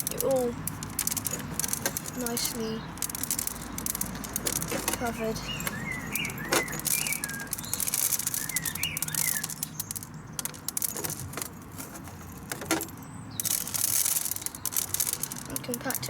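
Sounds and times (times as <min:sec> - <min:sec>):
bird seed rattling and clicking: 0:00.0 - 0:16.0
bird chirping: 0:01.4 - 0:11.2.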